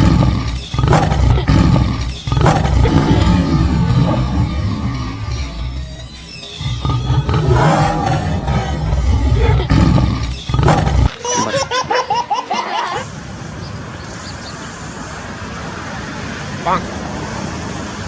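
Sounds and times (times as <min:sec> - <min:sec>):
loud animal roar: 0:00.0 - 0:11.7.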